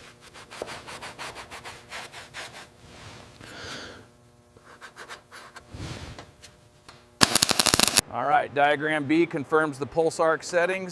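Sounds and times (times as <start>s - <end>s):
hand sanding strokes: 0.0s - 3.3s.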